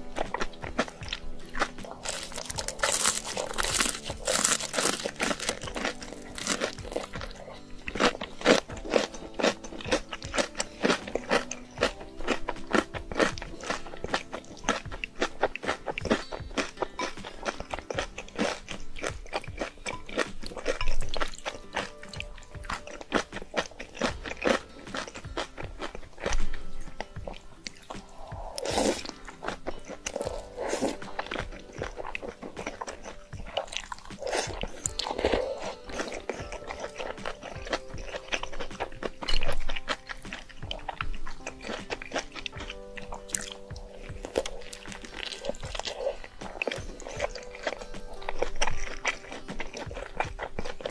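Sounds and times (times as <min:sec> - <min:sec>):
background music held notes: 0:00.0 - 0:50.9
person crunching and chewing: 0:00.0 - 0:50.9.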